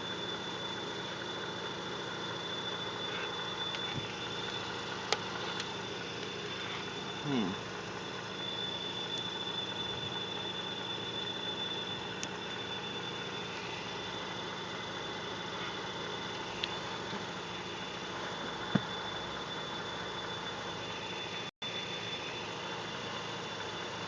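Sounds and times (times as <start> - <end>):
high-pitched electronic whine: 0.0 - 24.0
rotary car engine running: 0.0 - 24.0.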